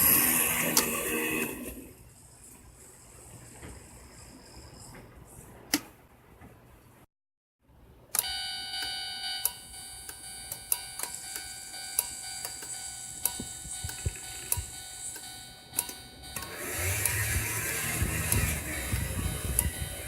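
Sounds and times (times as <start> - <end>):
steady electronic tone: 8.2 - 20.0.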